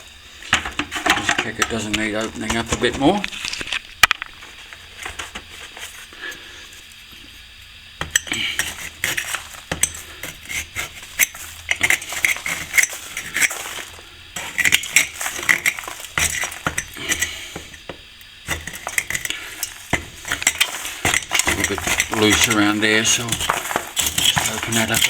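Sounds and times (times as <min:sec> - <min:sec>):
metal tool scraping mortar: 0:08.0 - 0:25.0.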